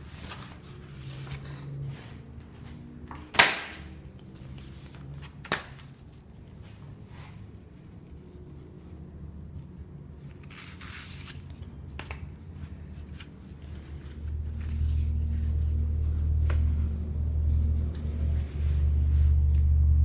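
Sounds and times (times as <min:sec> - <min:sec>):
low hum: 0:06.0 - 0:20.0
loud deep rumble: 0:13.7 - 0:20.0.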